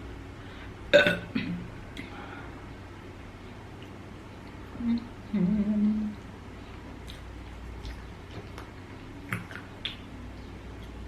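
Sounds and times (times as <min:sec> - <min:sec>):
low burp: 0:00.9 - 0:01.6
chewing and mouth noises: 0:07.0 - 0:11.0.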